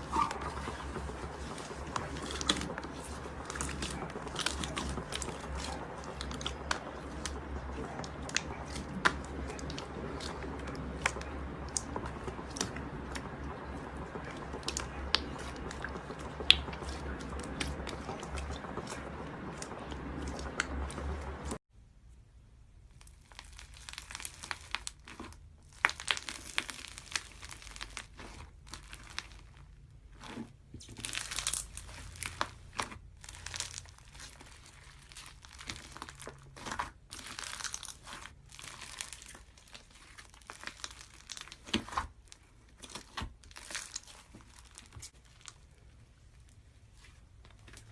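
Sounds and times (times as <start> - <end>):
crisp crinkling and crunching: 0.0 - 21.6, 22.8 - 47.9
low hum: 0.0 - 23.0.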